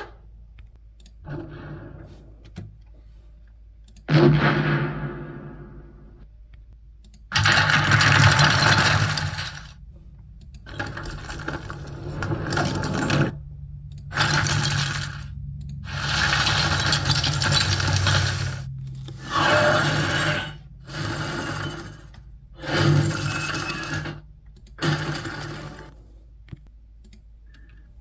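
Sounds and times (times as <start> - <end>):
steady low hum: 0.0 - 28.0
dense mechanical noise bursts: 7.3 - 26.0.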